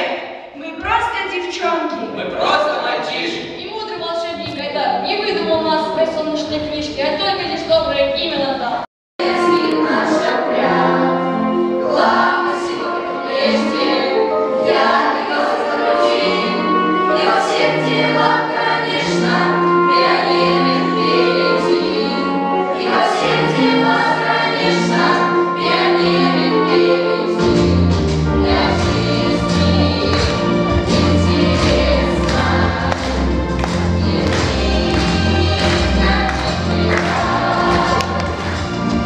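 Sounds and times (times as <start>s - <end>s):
choir singing: 0.0s - 0.6s, 9.2s - 39.0s
musical accompaniment: 9.2s - 39.0s.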